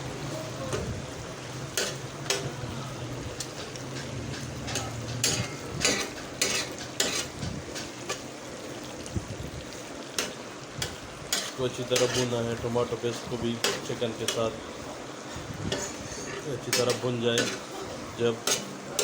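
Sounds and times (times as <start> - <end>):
chicken sizzling in a pan: 0.0 - 19.0
spoon scraping a pan: 1.7 - 2.6, 3.4 - 8.3, 10.1 - 12.6, 13.5 - 19.0.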